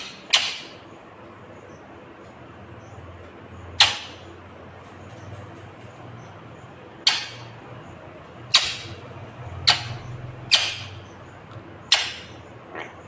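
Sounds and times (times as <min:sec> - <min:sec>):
parakeet shrill calls: 0:00.0 - 0:00.8, 0:07.0 - 0:07.6, 0:08.5 - 0:11.2, 0:11.8 - 0:12.9
steady low hum: 0:00.0 - 0:13.0.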